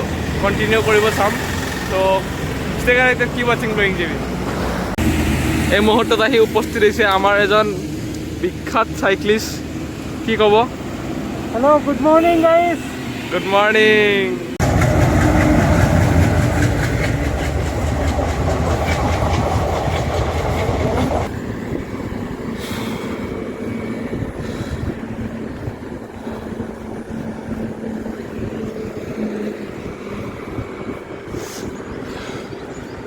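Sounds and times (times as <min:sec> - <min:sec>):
heavy vehicle rumbling past: 0:00.0 - 0:08.1, 0:14.5 - 0:21.8
road and wind noise: 0:00.0 - 0:33.0.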